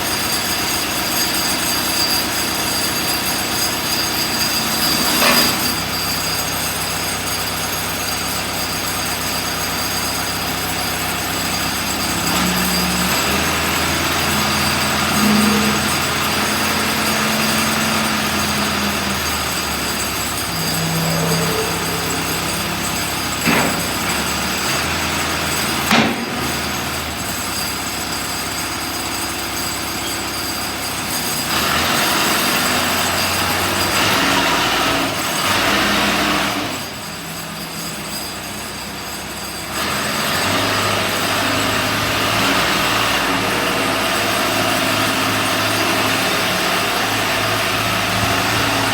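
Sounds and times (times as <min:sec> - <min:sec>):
diesel engine running: 0:00.0 - 0:48.9
sharp metallic knocks: 0:10.8 - 0:27.8.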